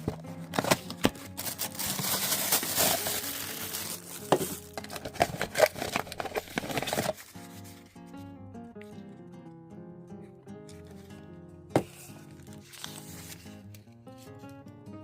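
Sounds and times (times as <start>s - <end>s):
plastic packaging crinkling: 0.0s - 7.8s, 12.3s - 13.9s.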